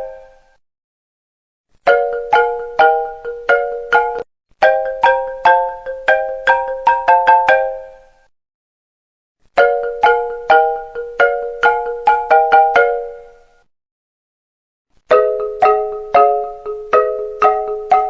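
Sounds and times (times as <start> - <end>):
marimba phone ringtone: 1.9 - 8.1, 9.6 - 13.5, 15.1 - 18.0.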